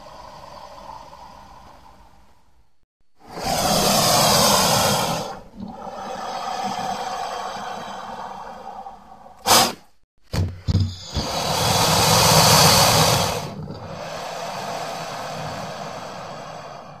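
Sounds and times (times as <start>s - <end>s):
creature hissing exhale with rumble: 11.0s - 17.0s.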